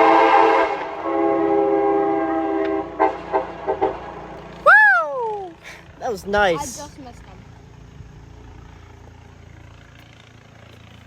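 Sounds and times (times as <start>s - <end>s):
locomotive air horn: 0.0s - 4.6s
person whooping: 4.6s - 5.8s.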